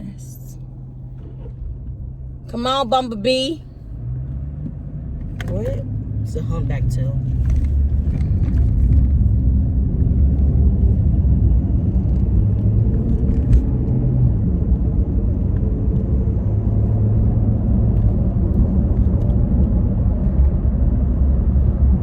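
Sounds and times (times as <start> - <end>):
car engine rumble: 0.0 - 22.0
road noise: 0.0 - 22.0.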